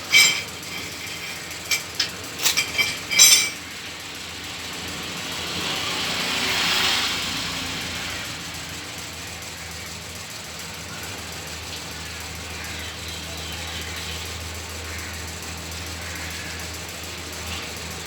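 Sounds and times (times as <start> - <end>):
metal tools clanking: 0.0 - 3.7.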